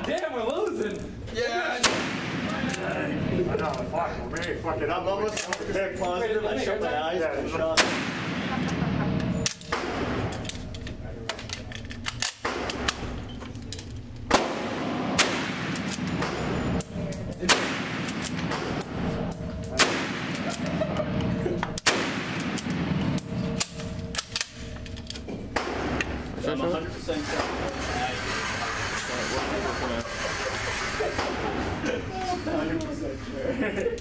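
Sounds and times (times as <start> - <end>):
rifle gunshots with echo: 1.8 - 2.8, 7.8 - 8.8, 14.3 - 16.6, 17.4 - 18.8, 19.8 - 20.7, 21.8 - 23.0.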